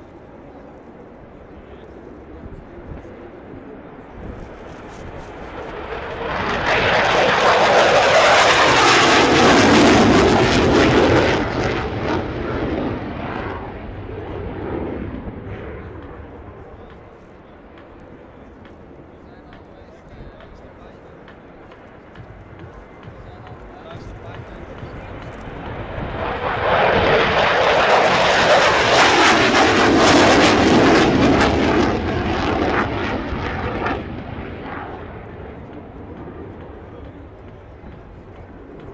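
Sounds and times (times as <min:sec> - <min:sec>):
jet aircraft flying past: 0:00.0 - 0:38.9.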